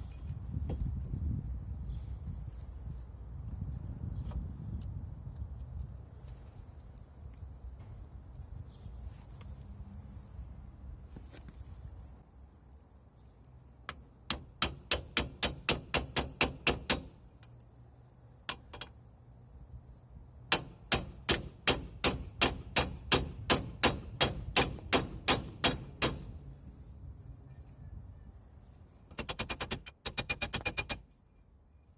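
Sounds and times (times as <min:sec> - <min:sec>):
hammer striking chisel on steel: 0:13.9 - 0:17.2, 0:20.5 - 0:26.4.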